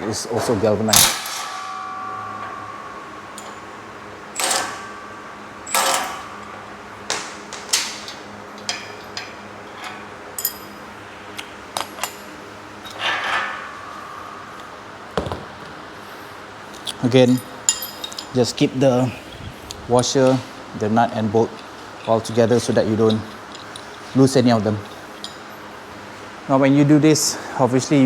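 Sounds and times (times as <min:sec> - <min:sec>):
metal clinks of bolts: 0:00.9 - 0:15.8, 0:16.7 - 0:18.6, 0:21.1 - 0:25.7
ringing knock on steel rack: 0:01.0 - 0:06.7.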